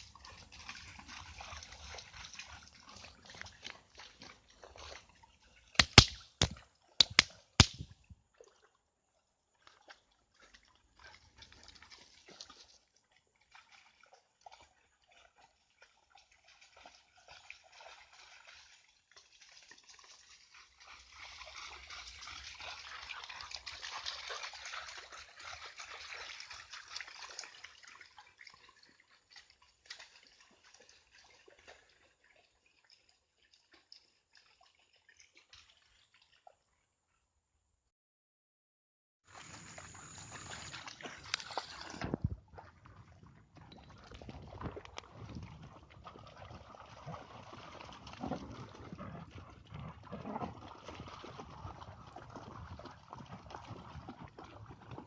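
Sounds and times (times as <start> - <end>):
water sloshing and splashing: 0.0 - 8.8, 9.5 - 36.6, 39.3 - 55.0
sharp knocks: 5.8 - 7.8.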